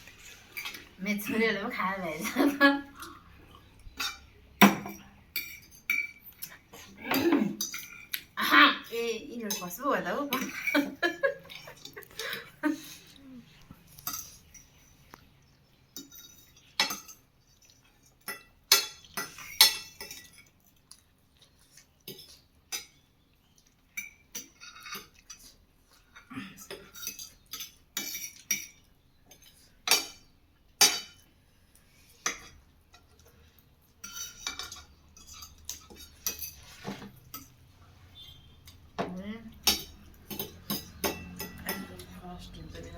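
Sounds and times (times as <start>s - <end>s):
cutlery clinking on plates: 3.9s - 8.3s, 13.9s - 14.8s, 15.9s - 20.6s, 22.0s - 23.0s, 23.9s - 31.3s, 32.1s - 33.2s, 34.0s - 42.2s.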